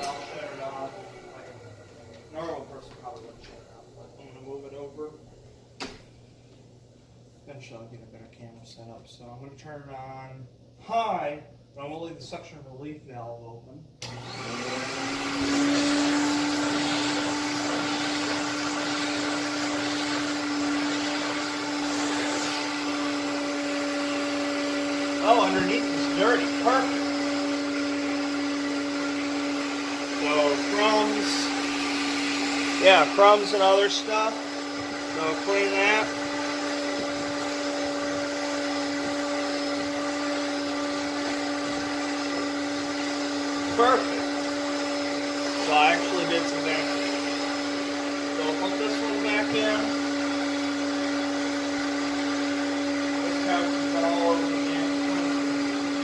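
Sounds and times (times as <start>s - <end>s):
vacuum cleaner running: 0.0s - 6.4s, 14.0s - 56.0s.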